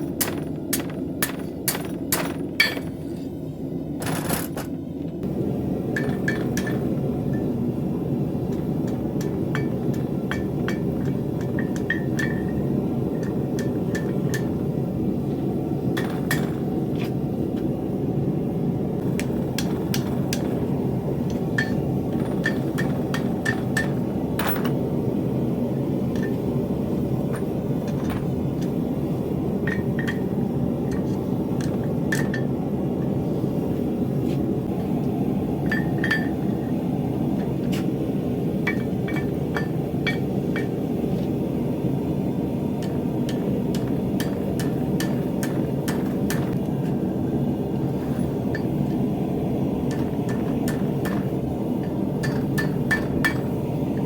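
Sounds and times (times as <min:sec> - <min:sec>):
hammer on steel: 0:49.9 - 0:53.6.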